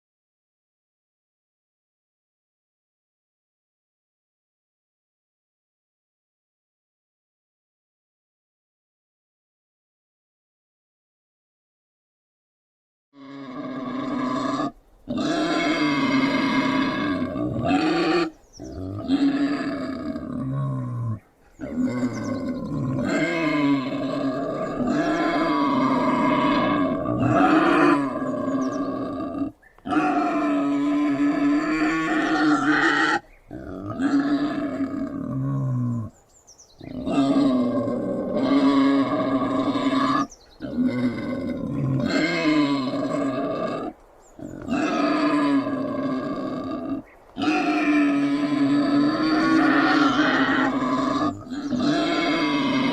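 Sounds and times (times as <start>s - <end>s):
wild boar growling and grunting: 13.2s - 36.2s, 36.8s - 52.9s.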